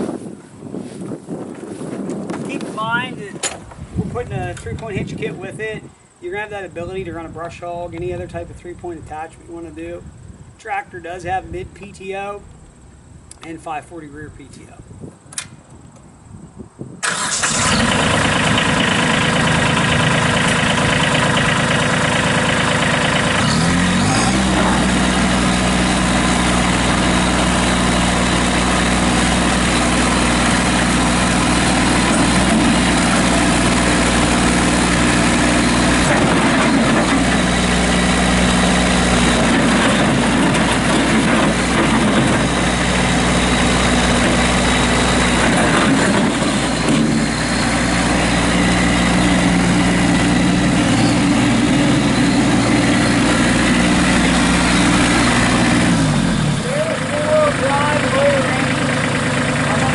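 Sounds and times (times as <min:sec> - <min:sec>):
diesel tractor engine: 0:17.0 - 0:59.9.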